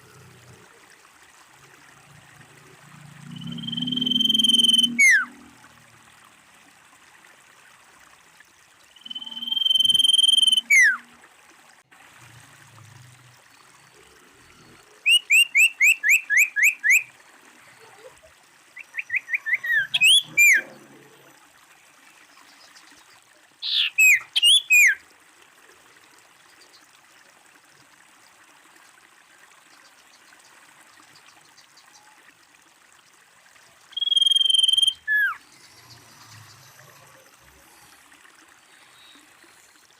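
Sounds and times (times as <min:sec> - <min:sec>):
bird calling with whistles: 0:03.4 - 0:05.3, 0:09.0 - 0:11.0, 0:15.0 - 0:17.1, 0:18.8 - 0:20.7, 0:23.6 - 0:25.0, 0:33.9 - 0:35.4.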